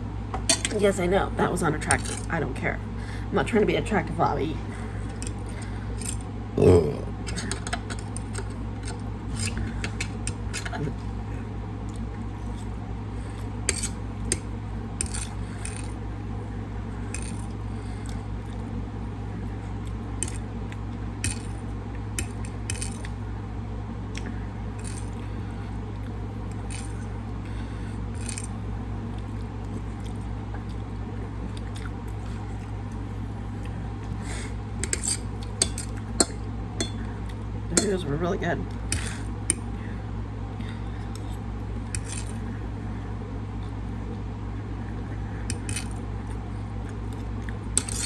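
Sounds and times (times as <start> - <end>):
steady low hum: 0.0 - 48.0
cutlery clinking on a plate: 0.4 - 0.8.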